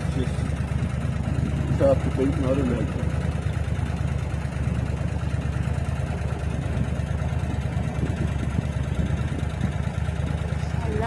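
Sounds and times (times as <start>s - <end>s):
boat motor humming: 0.0s - 11.0s.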